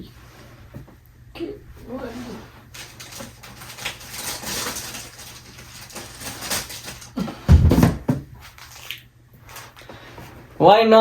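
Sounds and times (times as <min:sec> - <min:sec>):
small clicks and rustles: 0:02.7 - 0:07.2, 0:08.4 - 0:10.0.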